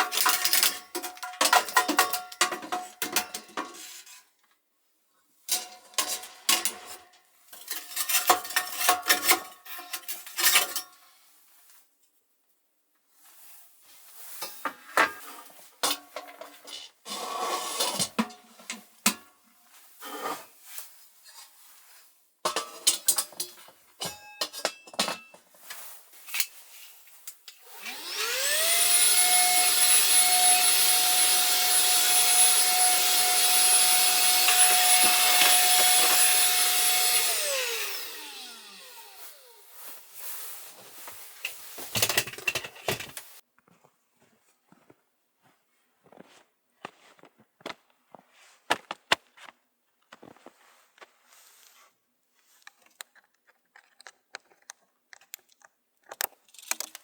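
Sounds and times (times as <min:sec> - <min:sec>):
objects clicking and knocking: 0:00.0 - 0:04.0, 0:31.2 - 0:38.1, 0:41.4 - 0:43.4, 0:52.6 - 0:57.0
small electric motor whine: 0:27.6 - 0:39.9.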